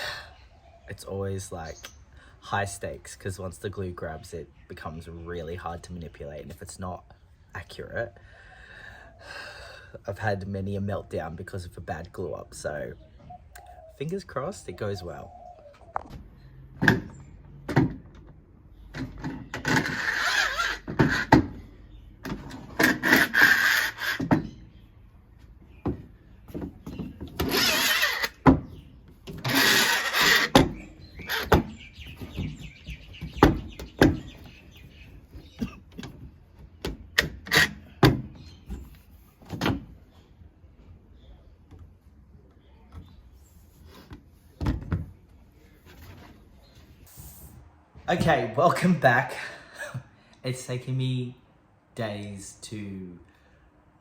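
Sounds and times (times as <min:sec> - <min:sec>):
wooden knocks and clatters: 0:25.6 - 0:40.0.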